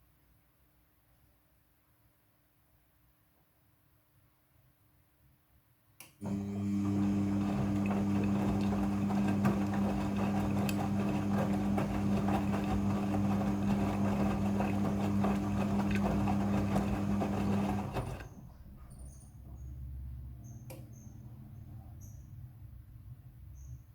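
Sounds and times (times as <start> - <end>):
washing machine running: 6.2 - 18.5.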